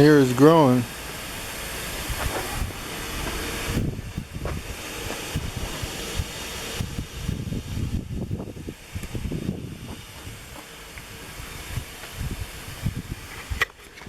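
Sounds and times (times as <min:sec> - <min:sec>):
vacuum sucking air hiss: 0:00.0 - 0:14.0
low rumble: 0:00.8 - 0:10.6.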